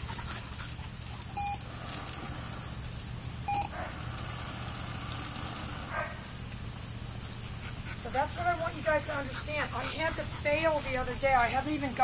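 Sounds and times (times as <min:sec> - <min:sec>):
short electronic beeps: 0:01.4 - 0:01.6, 0:03.5 - 0:03.7.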